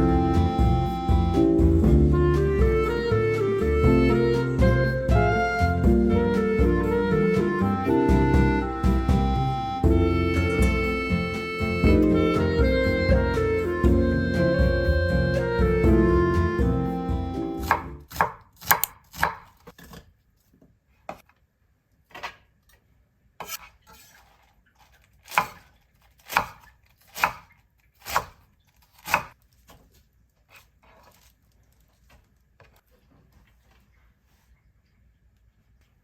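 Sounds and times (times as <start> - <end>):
knife chopping on cutting board: 17.6 - 20.0, 25.3 - 29.8.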